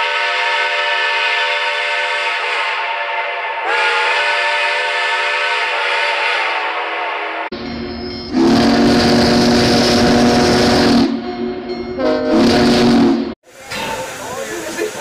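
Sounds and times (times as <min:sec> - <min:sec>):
steam whistle blowing: 0:00.0 - 0:07.5, 0:08.3 - 0:11.2, 0:12.0 - 0:13.4.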